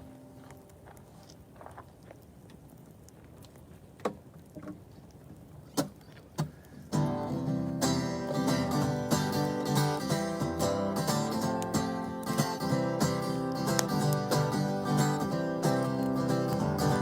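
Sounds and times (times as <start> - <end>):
acoustic guitar strumming: 5.8 - 17.0.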